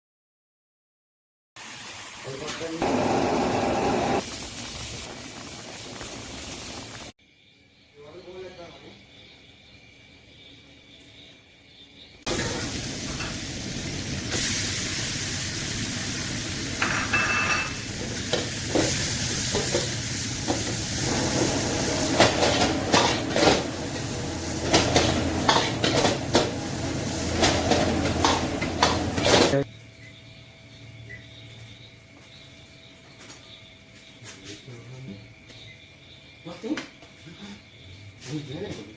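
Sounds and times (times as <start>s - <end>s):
food sizzling in a hot pan: 1.6s - 7.2s, 12.3s - 29.6s
spatula scraping and knocking pan: 20.5s - 23.7s.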